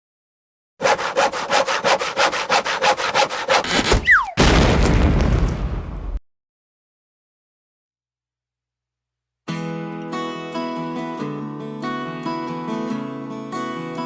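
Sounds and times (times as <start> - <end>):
saw cutting through wood: 0.8 - 4.3
short falling whistle: 4.0 - 4.4
loud boom: 4.3 - 6.2.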